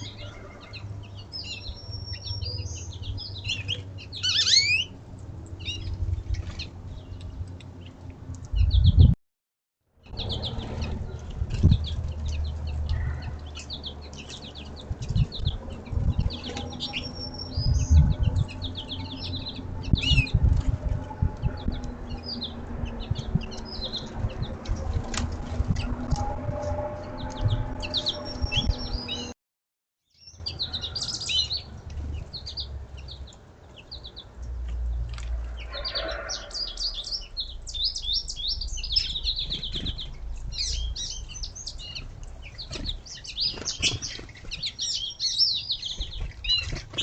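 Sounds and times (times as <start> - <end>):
songbirds chirping and trilling: 0.0 - 9.2, 10.0 - 29.4, 30.1 - 47.0
wings fluttering: 42.0 - 45.0, 45.8 - 47.0.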